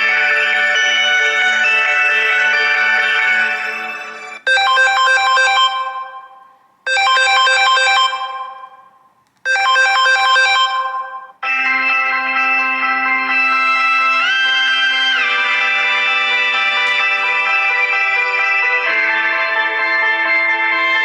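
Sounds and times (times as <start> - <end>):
phone ringtone chime notes: 0.0 - 21.0
ringtone with held notes: 0.0 - 21.0.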